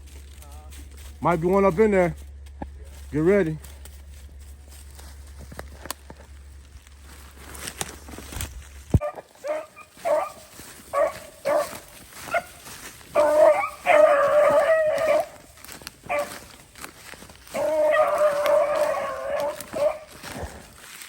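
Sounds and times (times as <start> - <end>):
beagles baying: 9.0 - 21.0.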